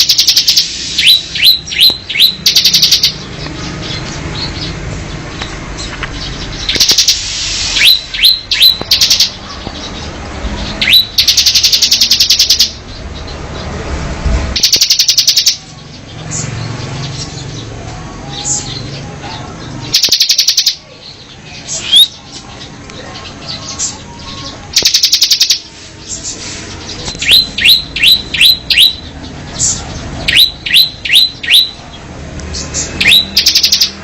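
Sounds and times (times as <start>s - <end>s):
bird rattling call: 14.6s - 15.6s.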